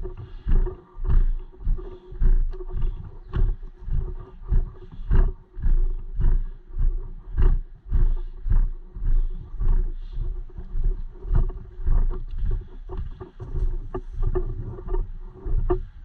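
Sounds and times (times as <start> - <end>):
microphone rustle and knock: 0.0 - 6.4, 7.3 - 16.0
heavy footsteps: 0.0 - 15.6.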